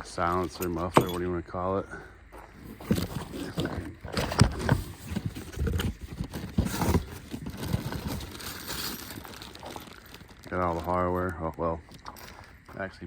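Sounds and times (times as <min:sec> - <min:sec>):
parts knocking and clunking: 0:00.0 - 0:01.6, 0:02.3 - 0:12.9
packaging rustling: 0:02.6 - 0:12.8.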